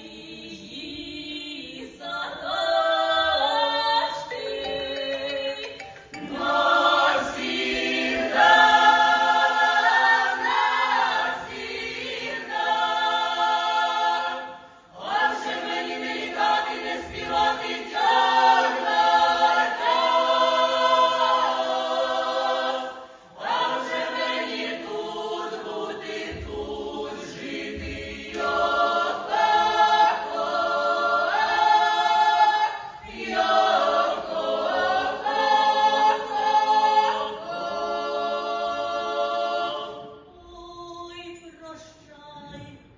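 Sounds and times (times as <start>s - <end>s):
choir singing a cappella: 0.0s - 41.2s, 42.3s - 42.9s.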